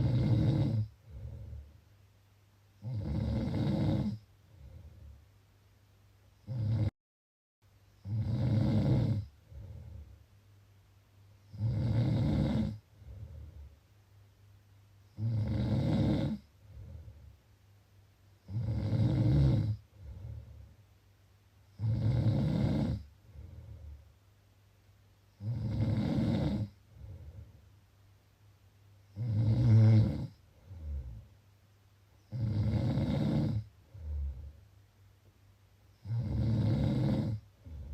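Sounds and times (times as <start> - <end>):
loud snores: 0.0 - 1.6, 2.8 - 4.8, 6.4 - 6.9, 8.0 - 10.0, 11.5 - 12.8, 15.1 - 16.9, 18.4 - 20.2, 21.8 - 23.1, 25.4 - 27.1, 29.1 - 31.2, 32.3 - 34.5, 36.0 - 37.9.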